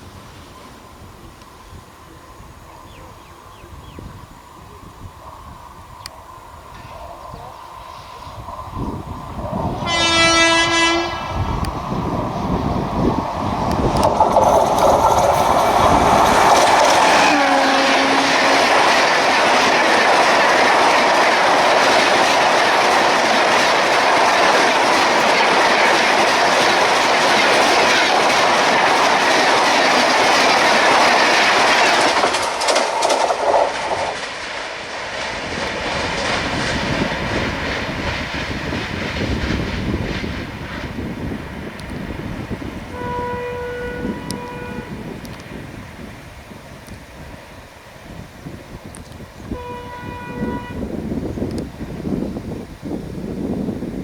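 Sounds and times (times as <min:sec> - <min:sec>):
train wheels clickety-clack: 0:08.8 - 0:45.6
train horn: 0:09.8 - 0:11.6, 0:17.1 - 0:19.0, 0:42.9 - 0:45.2, 0:49.5 - 0:51.1.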